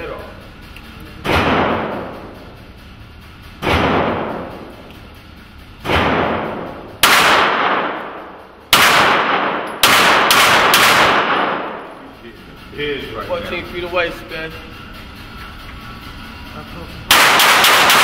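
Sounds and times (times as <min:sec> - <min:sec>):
echoing pistol shots: 0:03.6 - 0:04.7, 0:05.8 - 0:11.8, 0:17.1 - 0:18.0.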